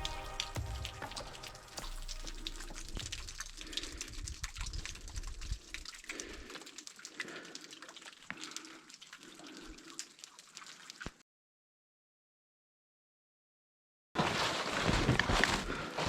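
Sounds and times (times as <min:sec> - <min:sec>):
ice ticks and crackles: 0:00.0 - 0:11.2
meltwater trickling and dripping: 0:00.0 - 0:11.2
wind rumble on microphone: 0:02.8 - 0:05.9.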